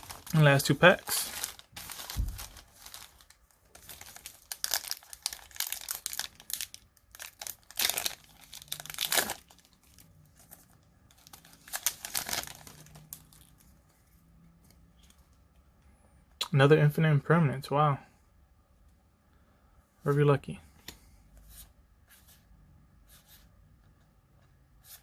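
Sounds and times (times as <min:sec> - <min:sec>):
foil wrapper crinkling and tearing: 0:00.0 - 0:13.6.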